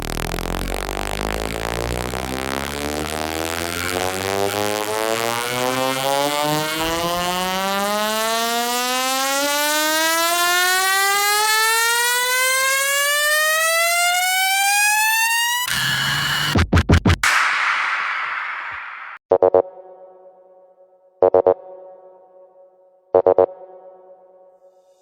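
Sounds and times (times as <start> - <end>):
low bass notes: 0.0 - 8.2
buzzy siren-like synth riser: 0.0 - 16.6.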